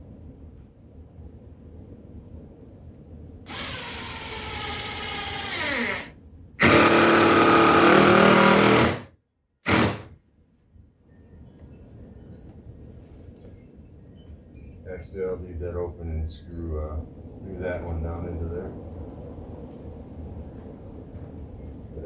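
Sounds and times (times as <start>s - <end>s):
power drill driving screws: 3.5s - 10.1s.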